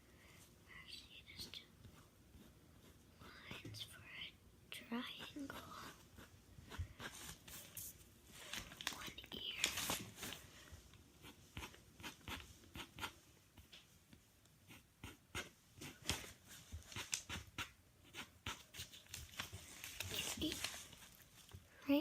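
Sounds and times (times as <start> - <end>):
pen scratching on paper: 5.1 - 7.4, 11.2 - 13.7, 14.6 - 16.1, 16.8 - 19.0.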